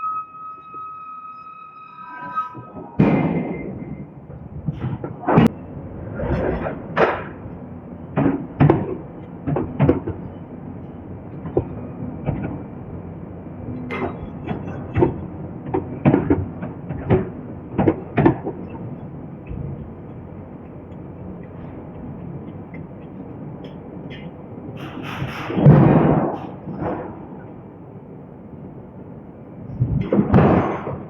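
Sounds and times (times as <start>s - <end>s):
metal knocks and clanks: 3.0s - 27.4s.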